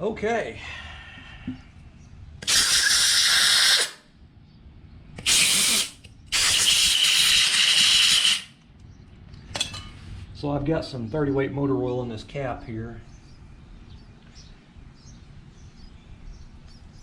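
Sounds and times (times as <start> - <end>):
compressed air hissing from blow gun: 2.4 - 4.0, 5.2 - 8.6.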